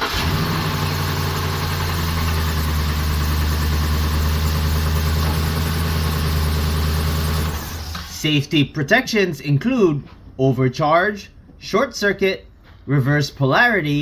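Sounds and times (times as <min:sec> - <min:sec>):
car engine idling: 0:00.0 - 0:08.2.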